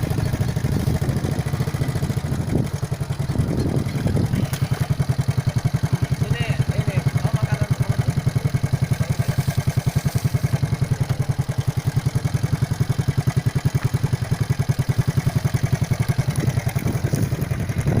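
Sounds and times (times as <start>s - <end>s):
small engine chugging: 0.0s - 18.0s.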